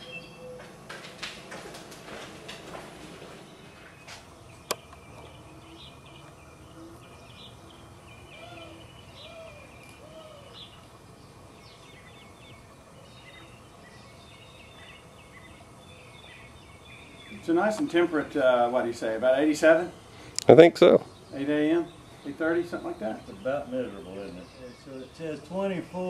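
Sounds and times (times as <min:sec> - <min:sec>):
birds chirping: 0:00.0 - 0:26.0
short low bird calls: 0:04.6 - 0:17.4.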